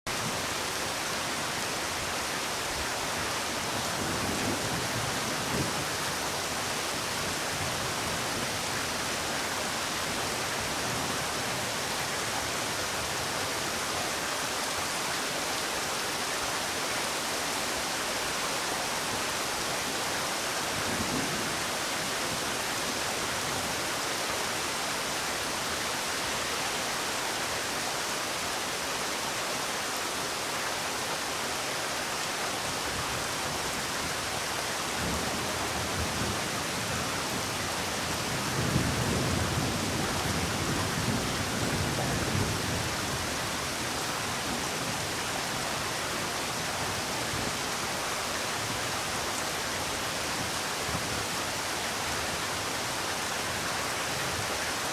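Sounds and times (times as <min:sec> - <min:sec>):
steady rain falling: 0:00.1 - 0:54.9.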